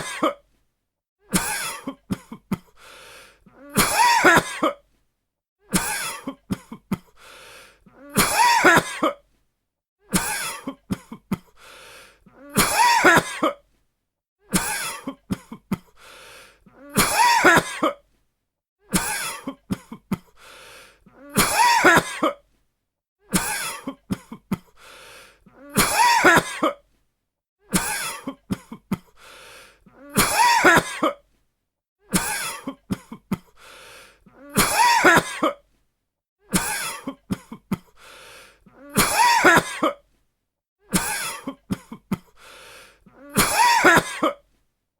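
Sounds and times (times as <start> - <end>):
person coughing: 0.0 - 0.4, 1.3 - 2.7, 3.6 - 4.8, 5.7 - 7.1, 8.1 - 9.2, 10.1 - 11.5, 12.5 - 13.6, 16.9 - 18.0, 19.0 - 20.3, 21.3 - 22.4, 25.7 - 26.8, 27.8 - 29.1, 30.1 - 31.2, 32.1 - 33.5, 34.4 - 35.6, 36.5 - 37.9, 38.8 - 40.0, 40.9 - 42.3, 43.2 - 44.4
person breathing in: 2.7 - 3.5, 7.1 - 7.9, 11.5 - 12.3, 15.9 - 16.6, 20.3 - 21.0, 24.7 - 25.4, 29.1 - 29.8, 33.5 - 34.3, 37.9 - 38.7, 42.3 - 43.1.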